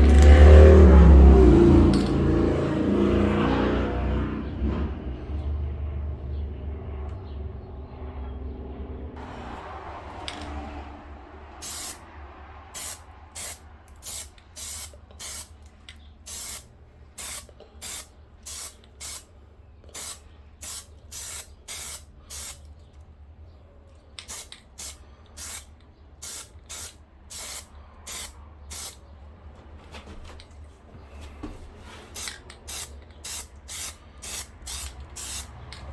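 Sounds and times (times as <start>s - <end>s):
aerosol spray can bursts: 11.6s - 12.0s, 12.8s - 15.5s, 16.3s - 16.6s, 17.2s - 19.3s, 20.0s - 22.6s, 24.2s - 29.0s, 32.1s - 35.6s.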